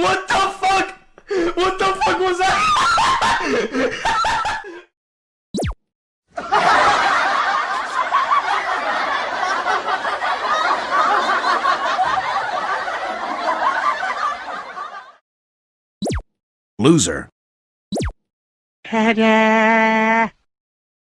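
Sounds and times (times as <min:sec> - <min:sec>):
crowd laughing: 0:01.2 - 0:04.9, 0:06.3 - 0:15.2.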